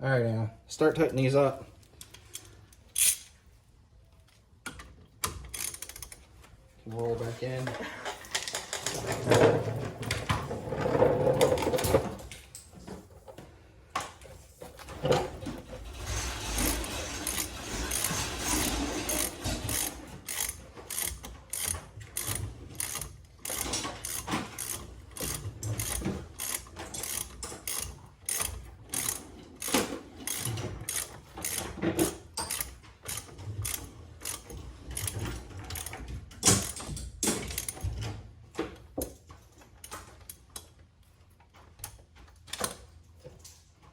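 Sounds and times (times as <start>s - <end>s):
ratchet wrench clicking: 2.1s - 3.4s, 5.4s - 6.2s, 16.6s - 31.6s, 32.5s - 34.4s
metallic clatter: 14.9s - 28.4s.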